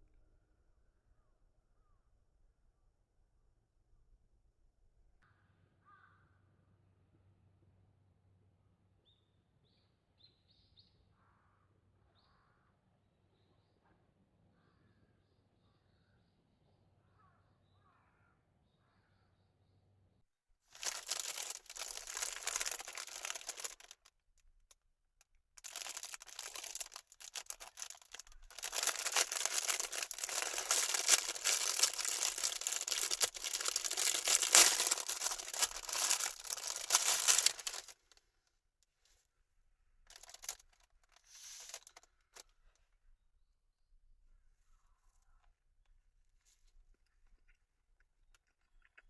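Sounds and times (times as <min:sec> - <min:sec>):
crinkling rustling handling noise: 0:20.7 - 0:24.1, 0:25.6 - 0:38.2, 0:40.1 - 0:42.4.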